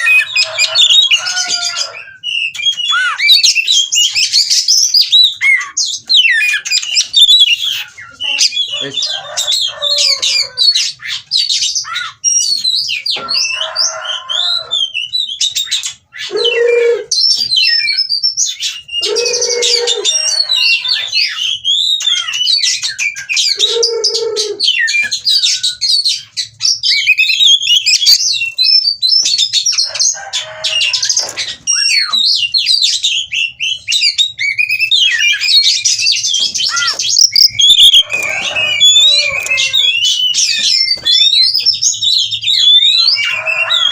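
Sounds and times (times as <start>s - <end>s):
bird singing whistles and chirps: 0.0s - 8.6s, 10.2s - 43.9s
harsh rasping bird notes: 36.0s - 41.3s.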